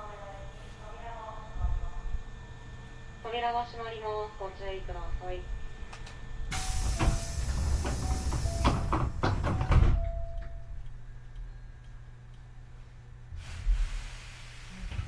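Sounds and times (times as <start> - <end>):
train doors hissing shut: 6.0 - 10.4, 13.4 - 15.0.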